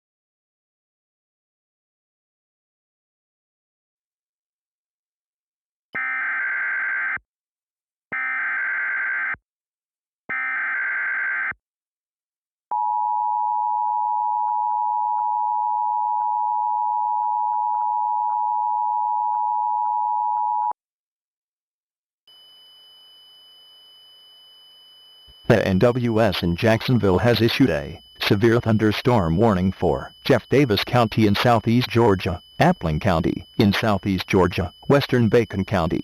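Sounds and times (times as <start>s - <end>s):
harsh dual tone attention signal: 22.3s - 36.0s
screeching digital data bursts: 25.4s - 36.0s.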